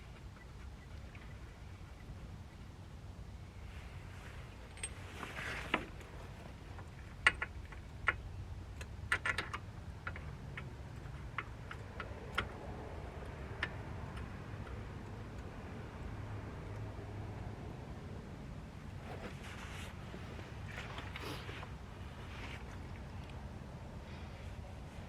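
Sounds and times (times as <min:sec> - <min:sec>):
faint low hum: 0:10.6 - 0:25.0.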